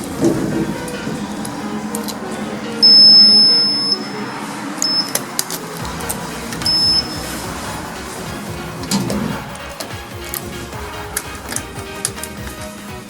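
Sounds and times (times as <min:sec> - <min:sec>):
high-pitched electronic beeps: 0:02.8 - 0:05.6, 0:06.4 - 0:07.4.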